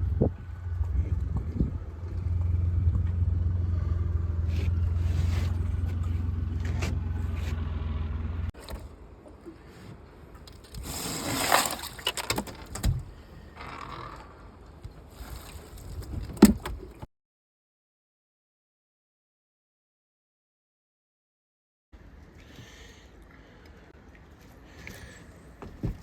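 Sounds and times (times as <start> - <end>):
engine idling: 0.0 - 8.6.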